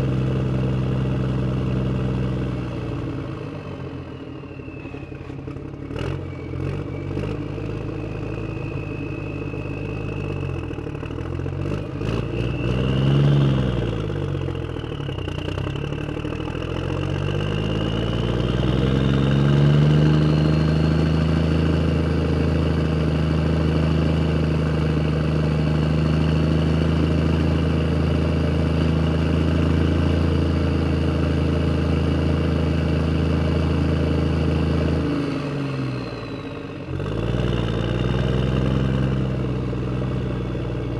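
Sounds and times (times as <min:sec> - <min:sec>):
vehicle engine revving: 0:05.2 - 0:40.9.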